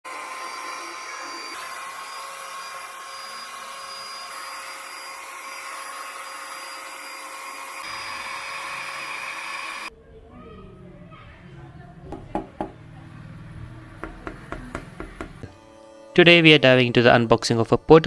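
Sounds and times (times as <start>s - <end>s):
handheld vacuum cleaner whine: 0.0s - 9.9s.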